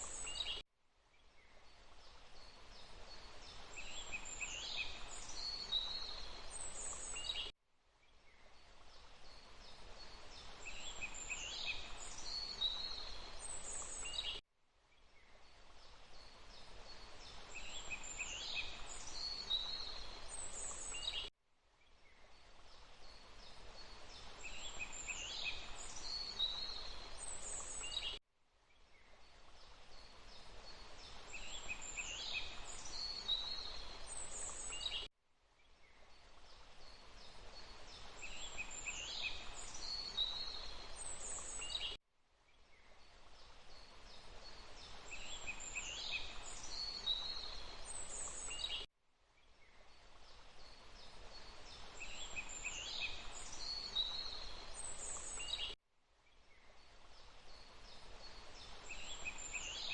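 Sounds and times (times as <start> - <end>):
running water hiss: 0.0 - 0.6, 1.6 - 7.5, 8.2 - 14.4, 15.4 - 21.3, 22.1 - 28.2, 28.9 - 35.1, 35.8 - 42.0, 42.7 - 48.9, 49.6 - 55.8, 56.5 - 59.9
songbird calls: 9.2 - 21.3, 28.9 - 35.1, 37.2 - 42.0, 43.7 - 48.9, 49.6 - 55.8, 57.5 - 59.9.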